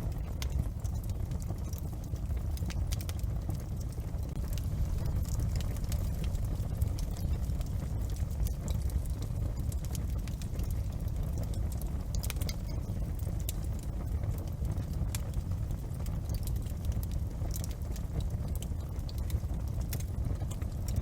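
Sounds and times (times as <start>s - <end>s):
fire popping and snapping: 0.0s - 21.0s
flames rumbling: 0.0s - 21.0s.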